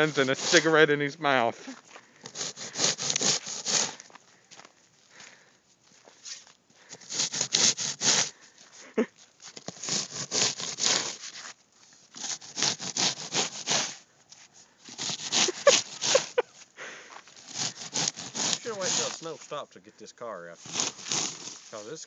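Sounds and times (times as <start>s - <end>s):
snow shovel scraping: 0.0s - 1.0s, 2.2s - 4.1s, 6.2s - 8.4s, 9.4s - 14.0s, 14.9s - 16.5s, 17.3s - 19.6s, 20.5s - 22.0s.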